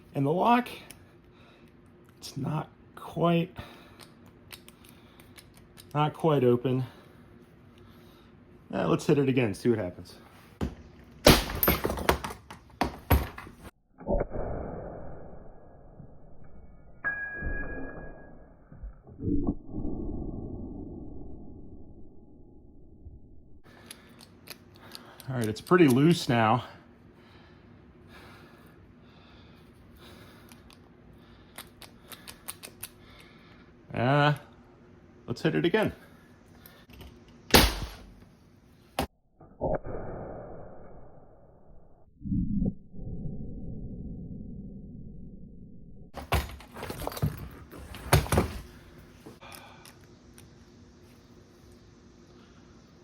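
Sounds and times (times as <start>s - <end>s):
muffled low noise: 18.8s - 23.6s, 39.5s - 46.1s.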